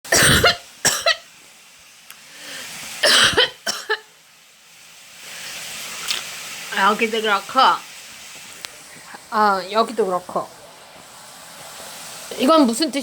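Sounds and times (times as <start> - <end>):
person coughing: 0.1 - 1.2, 3.0 - 4.1.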